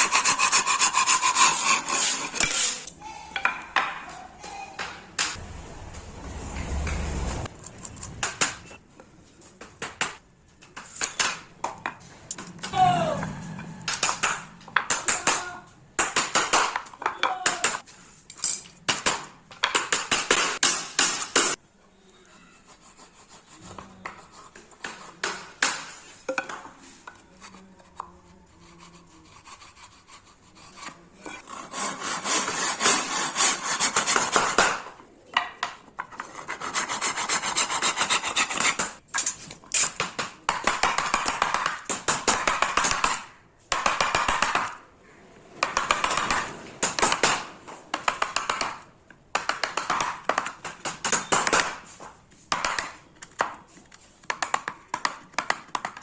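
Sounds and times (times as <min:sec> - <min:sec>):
hand saw cutting wood: 0:00.0 - 0:02.9, 0:28.6 - 0:34.8, 0:36.1 - 0:39.0.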